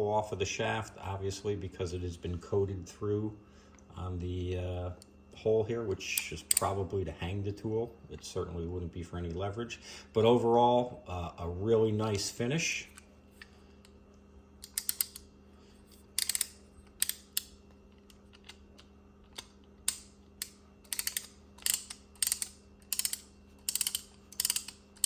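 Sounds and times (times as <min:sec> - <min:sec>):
ratchet pawl clicking: 0:06.2 - 0:06.7, 0:14.6 - 0:15.2, 0:16.2 - 0:17.6, 0:19.9 - 0:25.0.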